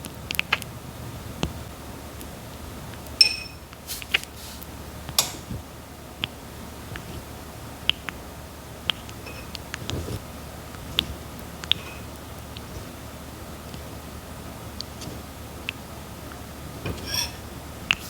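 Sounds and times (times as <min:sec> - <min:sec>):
tortoise biting and chewing: 0:08.9 - 0:13.0.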